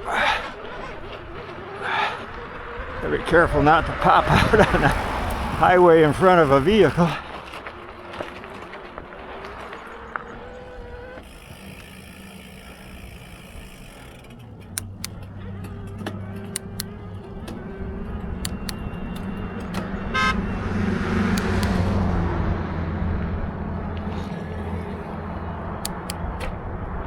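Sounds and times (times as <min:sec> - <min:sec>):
vehicle passing close: 0:00.0 - 0:27.0
sharp clicks: 0:03.6 - 0:22.3, 0:23.2 - 0:27.0
horn beep: 0:12.7 - 0:22.4.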